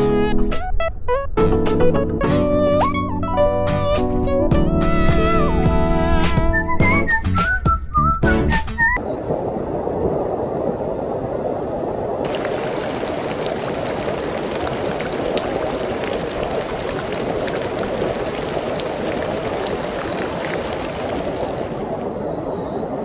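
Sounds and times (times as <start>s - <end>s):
strong wind: 8.8s - 23.0s
rain ticks: 9.0s - 23.0s
sea waves breaking on shore: 9.0s - 23.0s.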